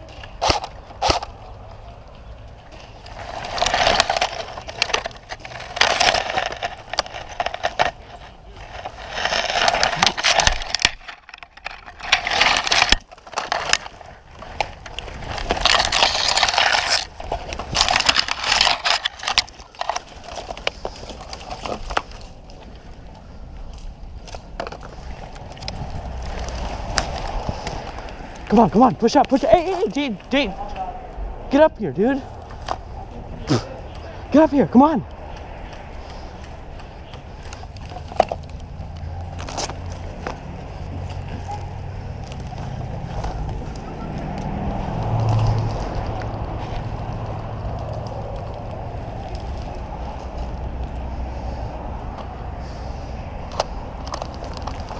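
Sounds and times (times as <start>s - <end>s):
twigs snapping: 0.0s - 31.2s, 32.2s - 52.3s, 53.4s - 54.9s
footsteps crunching through dry leaves: 2.3s - 22.9s, 24.9s - 30.2s, 34.7s - 51.7s.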